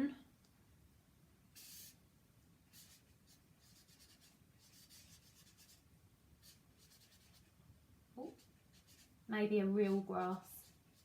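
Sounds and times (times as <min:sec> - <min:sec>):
pen scratching on paper: 0:01.6 - 0:02.0, 0:02.7 - 0:05.8, 0:06.4 - 0:07.5, 0:08.2 - 0:09.1, 0:09.9 - 0:11.0.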